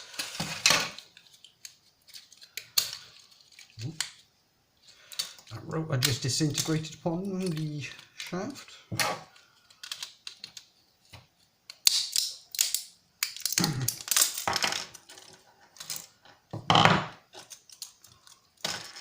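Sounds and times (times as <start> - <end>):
plastic and metal parts clattering: 12.5 - 16.6.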